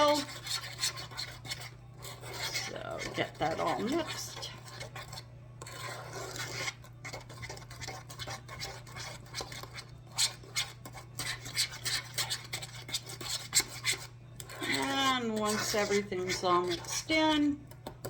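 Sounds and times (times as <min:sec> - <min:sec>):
utensil scraping batter in container: 0:00.0 - 0:18.0.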